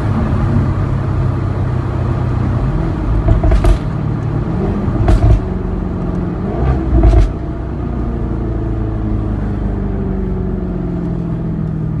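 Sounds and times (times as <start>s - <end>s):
car engine revving and idling: 0.0s - 12.0s
exhaust pops and crackles: 3.2s - 4.0s, 5.0s - 5.5s, 6.9s - 7.4s.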